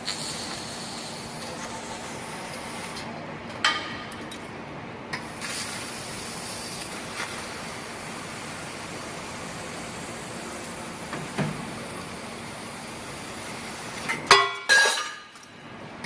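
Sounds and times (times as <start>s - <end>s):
laser cutting machine hissing: 0.0s - 3.1s, 5.2s - 14.2s.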